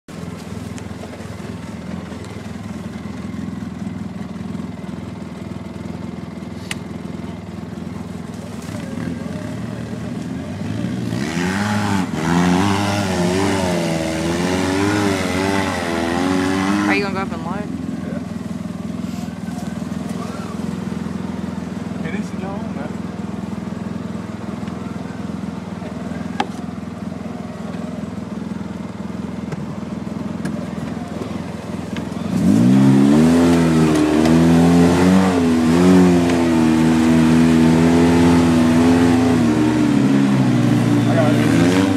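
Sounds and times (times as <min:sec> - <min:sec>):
off-road vehicle engine revving: 0:00.1 - 0:41.9.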